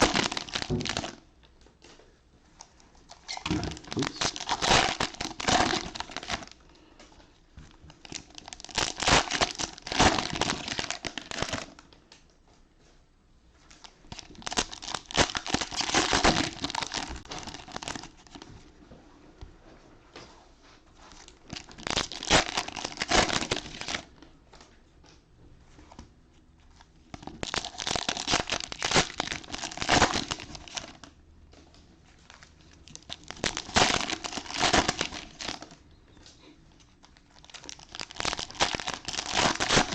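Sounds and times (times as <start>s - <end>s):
cellophane wrappers crinkling and tearing: 0.0s - 1.2s, 3.0s - 6.6s, 7.8s - 11.9s, 13.7s - 18.5s, 21.0s - 24.2s, 26.7s - 31.2s, 32.1s - 35.8s, 36.8s - 39.9s.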